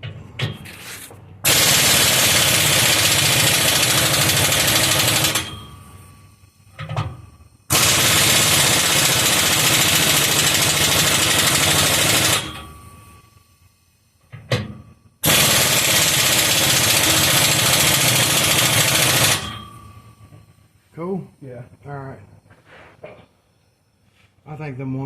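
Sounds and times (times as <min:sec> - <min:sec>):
impact wrench running: 0:01.4 - 0:05.6, 0:07.7 - 0:12.6, 0:15.2 - 0:19.7.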